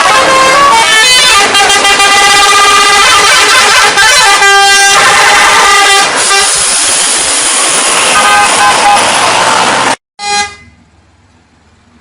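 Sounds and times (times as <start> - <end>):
bus multi-tone air horn: 0.0 - 6.8, 8.1 - 9.2, 10.2 - 10.8.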